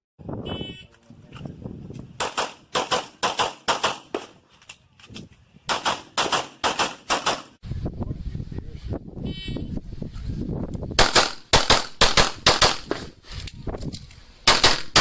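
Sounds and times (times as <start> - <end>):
pistol shots: 2.2 - 4.3, 5.7 - 7.6, 11.0 - 13.1, 14.5 - 15.0.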